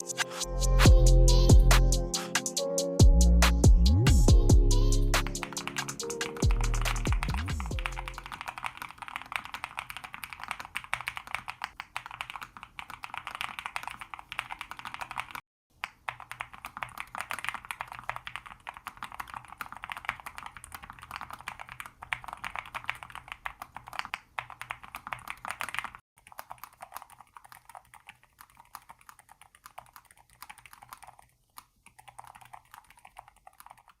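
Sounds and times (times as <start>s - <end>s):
fast typing on mechanical keyboard: 5.3s - 34.0s.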